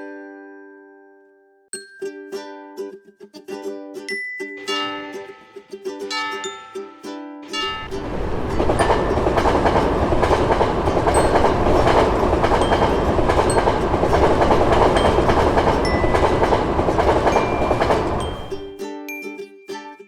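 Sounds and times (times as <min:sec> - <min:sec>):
train wheels rumbling on rail: 0:07.7 - 0:18.7.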